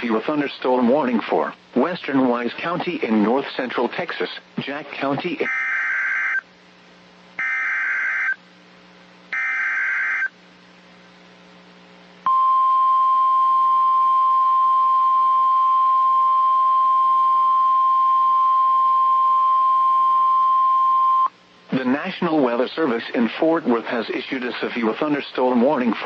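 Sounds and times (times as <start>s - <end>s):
steady loud alarm beep: 5.5s - 6.4s, 7.4s - 8.4s, 9.4s - 10.3s, 12.3s - 21.3s
warbling data screech: 7.4s - 8.4s, 9.4s - 10.3s.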